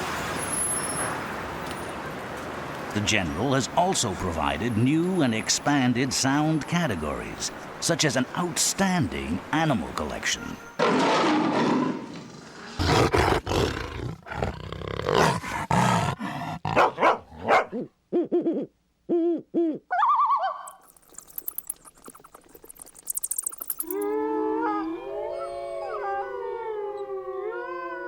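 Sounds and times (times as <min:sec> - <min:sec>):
large animals growling and roaring: 0:10.8 - 0:16.8.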